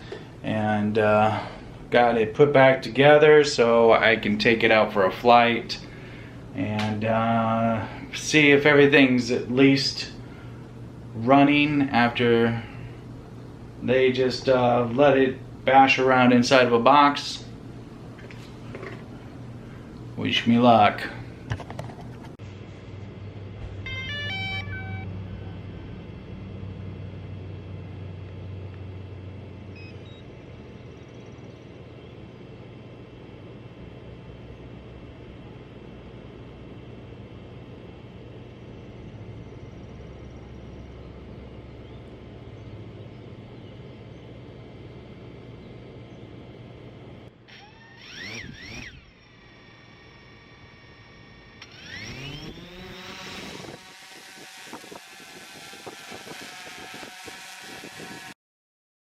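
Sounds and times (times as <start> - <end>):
drone motors humming: 0.0 - 58.4
drone motors whining: 23.5 - 31.8, 44.6 - 58.4
electronic beeps: 23.9 - 25.6.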